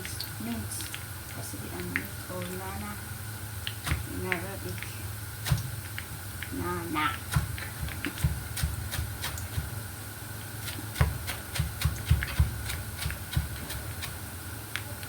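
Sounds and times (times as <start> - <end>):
knife chopping on cutting board: 7.3 - 9.8, 10.6 - 14.2.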